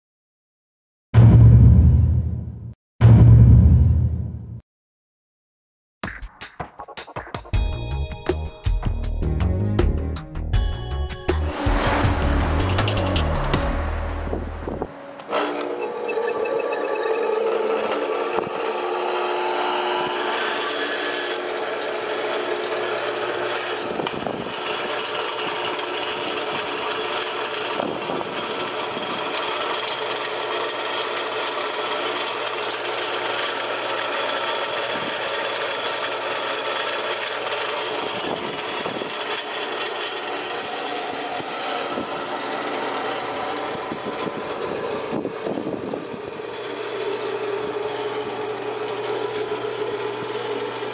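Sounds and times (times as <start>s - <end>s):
rebar cutter mechanical noise: 10.6s - 50.9s.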